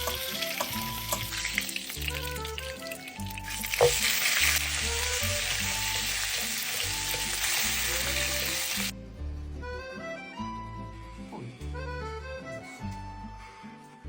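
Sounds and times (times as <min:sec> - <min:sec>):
meat sizzling in a pan: 0:00.0 - 0:08.9
background music: 0:00.0 - 0:14.0.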